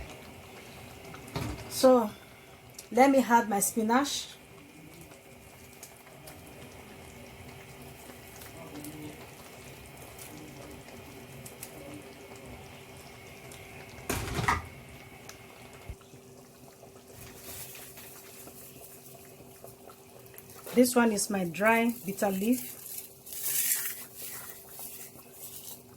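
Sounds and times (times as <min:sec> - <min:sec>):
steady hum: 0:00.0 - 0:05.8
kitchen tap running: 0:00.0 - 0:16.0.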